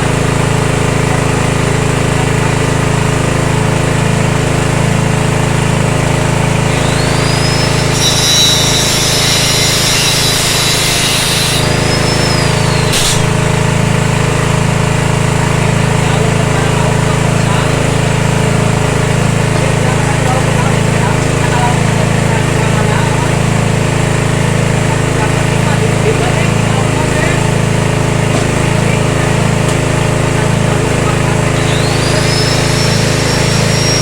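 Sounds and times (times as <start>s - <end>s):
petrol engine running: 0.0s - 34.0s
high rasping noise: 5.9s - 13.9s, 30.2s - 34.0s
sharp click: 10.0s - 13.4s.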